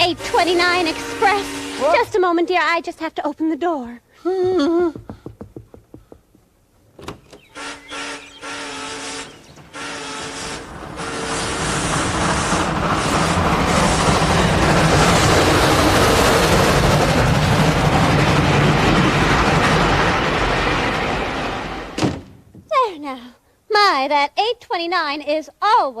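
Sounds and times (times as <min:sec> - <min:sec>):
train horn blasts: 0:00.0 - 0:02.3, 0:07.5 - 0:12.7
train rushing rumble: 0:00.0 - 0:02.9, 0:07.5 - 0:22.2.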